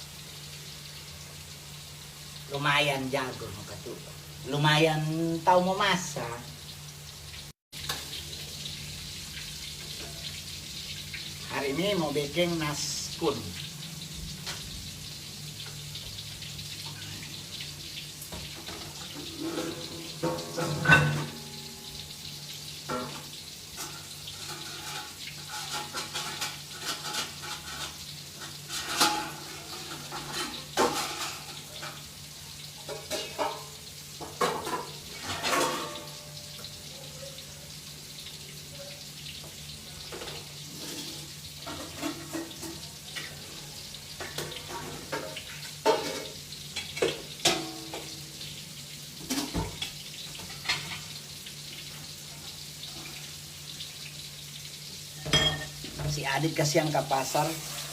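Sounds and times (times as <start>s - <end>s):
utensils clinking on pots and dishes: 9.8s - 10.5s, 18.2s - 32.1s, 32.7s - 36.8s, 39.3s - 48.5s, 49.2s - 51.2s, 55.1s - 56.4s.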